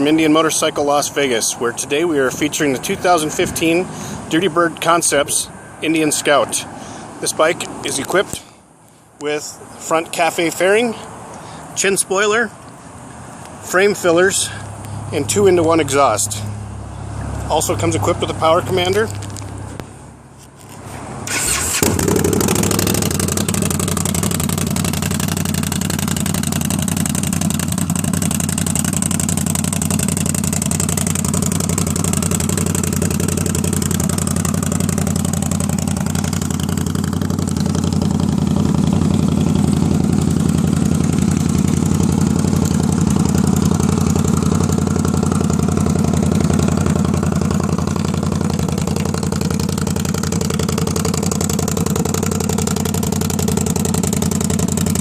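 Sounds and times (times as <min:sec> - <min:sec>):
motorcycle engine starting and idling: 0:02.2 - 0:05.4, 0:20.9 - 0:55.0.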